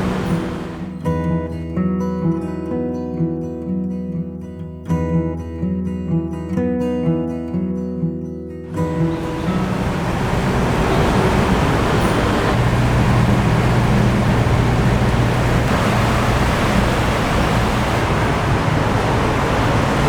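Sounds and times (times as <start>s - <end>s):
loud rumbling noise: 0.0s - 0.9s, 8.9s - 20.0s
constant low hum: 9.1s - 20.0s.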